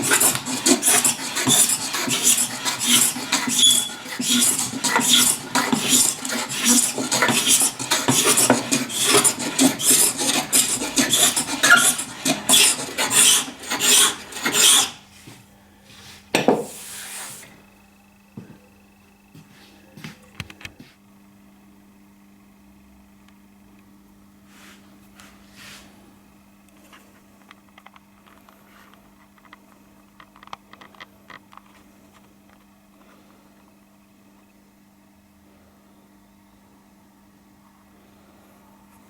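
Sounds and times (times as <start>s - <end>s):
hand tool rasping: 0.0s - 15.0s
faint steady hum: 0.0s - 39.0s.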